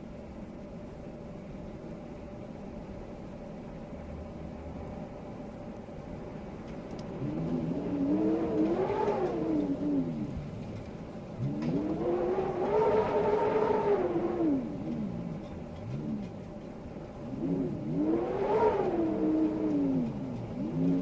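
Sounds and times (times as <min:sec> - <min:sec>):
wind howling: 0:07.1 - 0:16.5.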